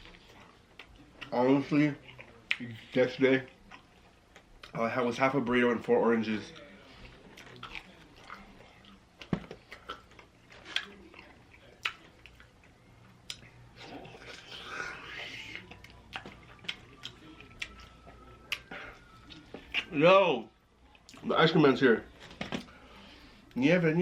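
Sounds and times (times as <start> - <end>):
person chewing: 0.0 - 4.8, 6.5 - 20.0, 20.8 - 21.3.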